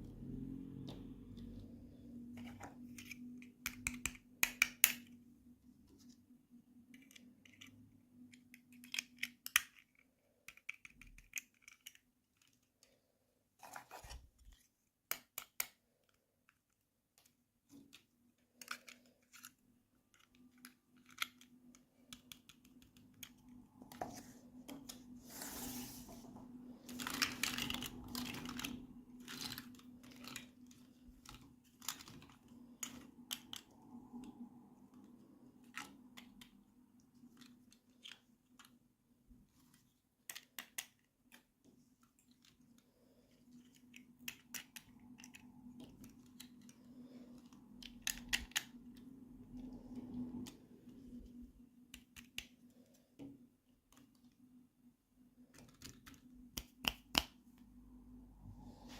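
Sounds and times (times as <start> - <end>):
plastic toy pieces clicking: 2.4 - 5.1, 6.9 - 12.8, 15.1 - 24.0, 26.8 - 33.7, 40.2 - 41.5, 43.5 - 49.0.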